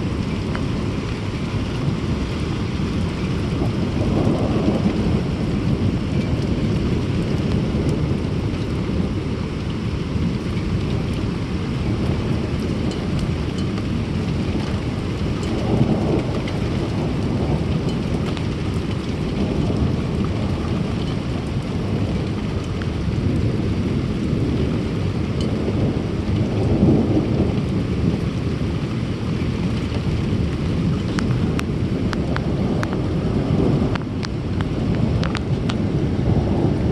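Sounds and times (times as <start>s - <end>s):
low rumble of thunder: 0.0s - 36.9s
steady rain: 0.0s - 36.9s.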